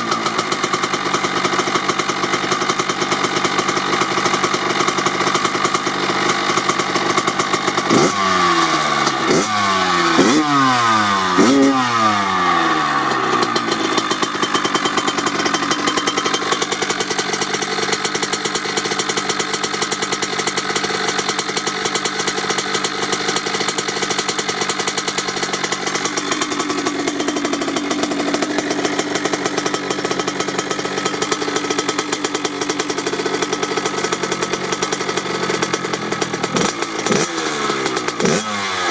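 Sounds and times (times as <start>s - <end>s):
two-stroke engine idling and revving: 0.0s - 38.9s.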